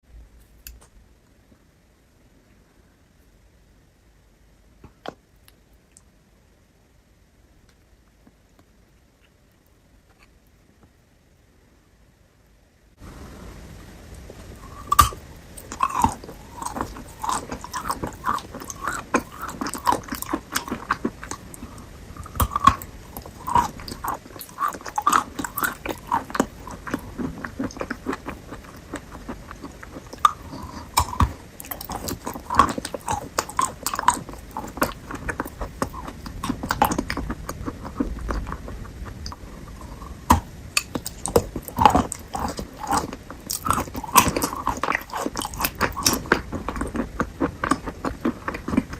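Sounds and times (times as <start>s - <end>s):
crunchy fruit chewing: 14.4s - 48.9s.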